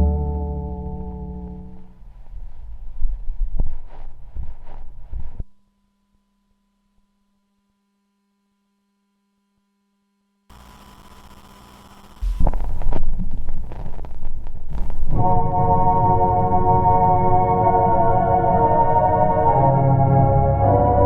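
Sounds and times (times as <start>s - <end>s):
faint steady hum: 0.0s - 19.8s
quiet hiss: 10.5s - 15.4s
low thumps: 12.2s - 15.2s
sustained organ-like music: 15.2s - 21.0s.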